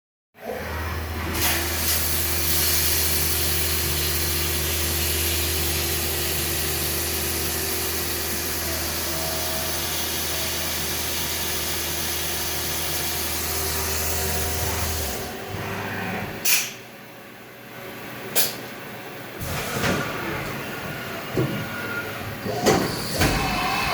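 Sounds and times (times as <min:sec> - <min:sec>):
milling machine hissing and humming: 0:19.4 - 0:23.9.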